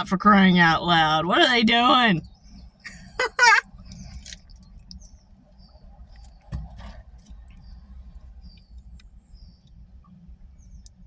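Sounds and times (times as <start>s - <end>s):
thump: 6.5s - 7.0s.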